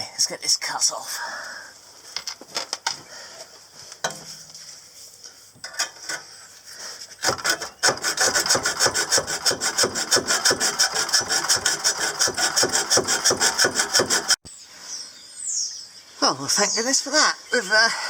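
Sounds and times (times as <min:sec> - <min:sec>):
rasping cutting strokes: 0:07.2 - 0:14.4.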